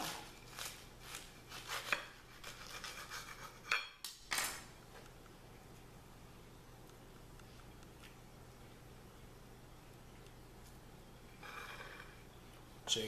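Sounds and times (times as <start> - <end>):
knife cutting crispy bread: 0.0 - 3.7.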